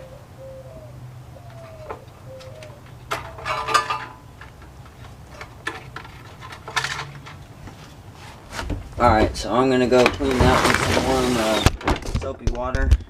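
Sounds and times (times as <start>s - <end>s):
small parts clattering: 3.1s - 7.9s, 9.9s - 12.4s.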